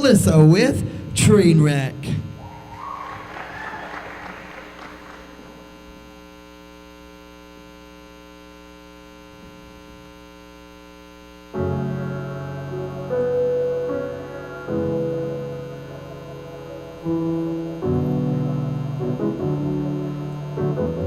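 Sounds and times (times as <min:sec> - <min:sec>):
electrical mains hum: 0:00.0 - 0:21.0
applause: 0:02.4 - 0:06.0
piano music: 0:11.6 - 0:21.0.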